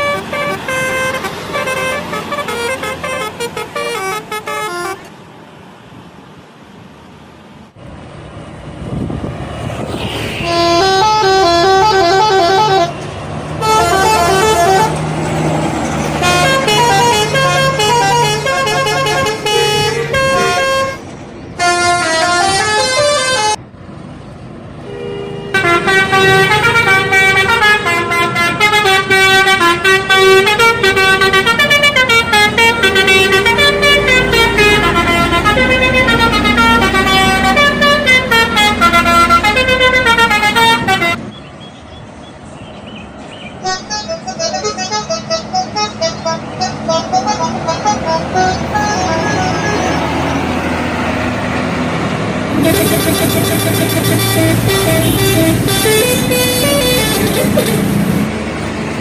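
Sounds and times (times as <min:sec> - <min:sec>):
melodic bus air horn: 0:00.0 - 0:05.1, 0:10.4 - 0:15.2, 0:16.0 - 0:23.6, 0:24.8 - 0:41.3, 0:43.6 - 0:50.7, 0:52.5 - 0:58.4
bus engine running: 0:00.0 - 0:59.0.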